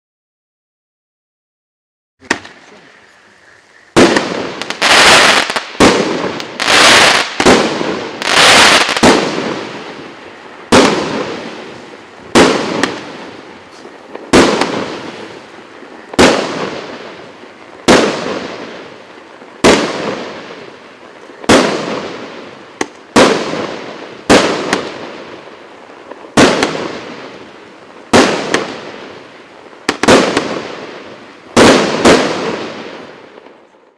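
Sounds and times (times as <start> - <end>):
firework shots banging: 2.2 - 2.8, 3.9 - 15.5, 16.1 - 18.9, 19.6 - 20.8, 21.4 - 25.2, 26.3 - 27.4, 28.1 - 29.1, 29.8 - 33.5.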